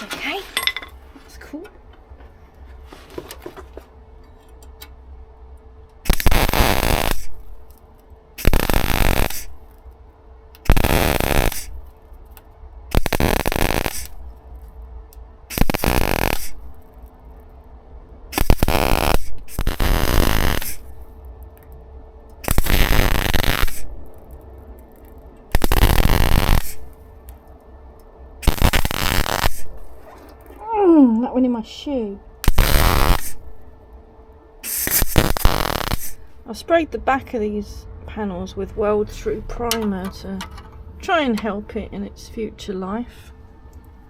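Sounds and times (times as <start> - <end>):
faint steady hum: 0.0 - 44.0
welder crackling: 5.9 - 9.9, 10.5 - 14.4, 15.1 - 17.0, 18.3 - 27.5, 28.4 - 30.0, 32.4 - 33.6, 34.6 - 36.4.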